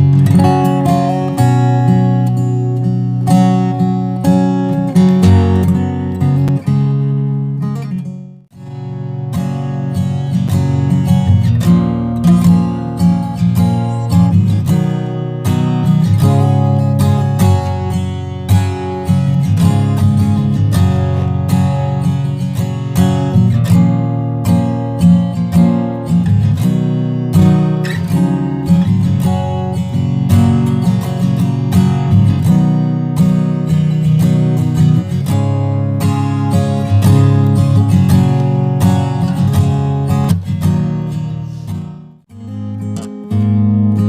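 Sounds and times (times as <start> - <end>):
acoustic guitar strummed and picked: 0.0 - 44.0.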